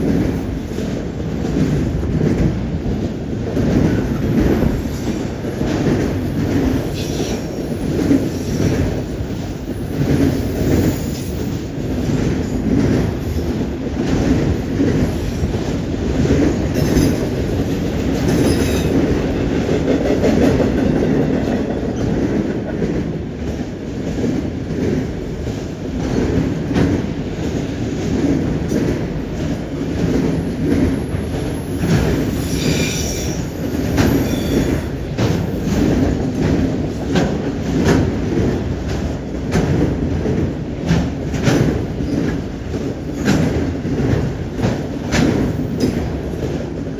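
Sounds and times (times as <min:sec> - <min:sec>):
freight train rumbling past: 0:00.0 - 0:46.9
train wheel squeals: 0:06.4 - 0:08.7, 0:09.5 - 0:11.7, 0:18.2 - 0:19.1, 0:30.3 - 0:35.9.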